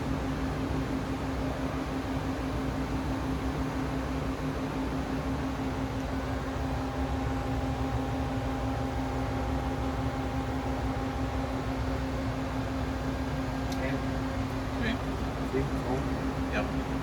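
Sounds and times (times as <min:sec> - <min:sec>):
high machine whine: 0:00.0 - 0:17.0
low machine hum: 0:00.0 - 0:17.0.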